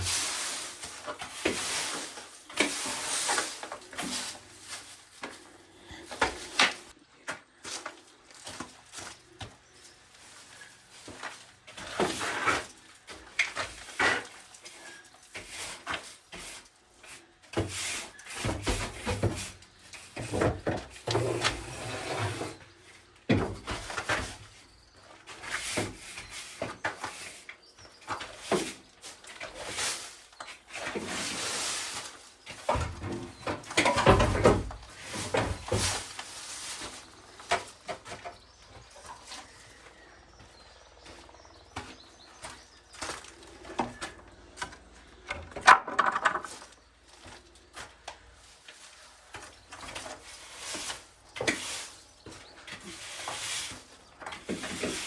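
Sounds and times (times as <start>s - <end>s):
wooden knocks and scrapes: 18.4s - 22.6s, 32.5s - 39.6s, 41.7s - 46.9s.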